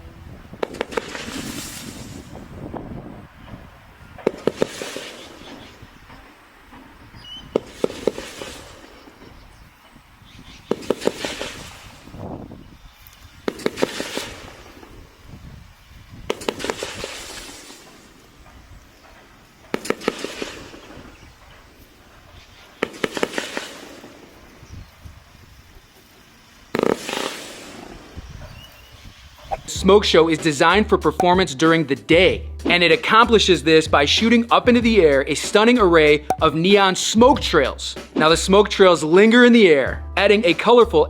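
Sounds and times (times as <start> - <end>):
firework hiss: 0.3 - 29.8
firework launch pops: 0.6 - 2.5, 4.2 - 9.4, 10.7 - 12.4, 13.4 - 15.1, 16.2 - 21.6, 22.8 - 24.8, 26.7 - 28.4.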